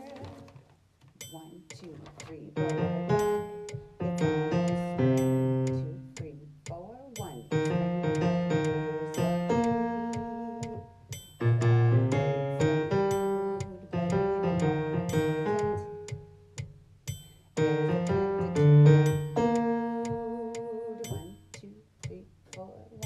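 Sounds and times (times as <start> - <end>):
keyboard playing chords and melody: 2.6 - 6.2, 7.5 - 21.2.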